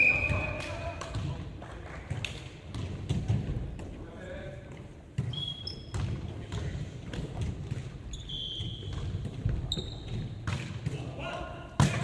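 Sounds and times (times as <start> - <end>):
ball bouncing on a court: 0.0 - 4.0, 4.7 - 11.2, 11.8 - 12.0
shoes squeaking on floor: 5.2 - 6.1, 8.0 - 10.4.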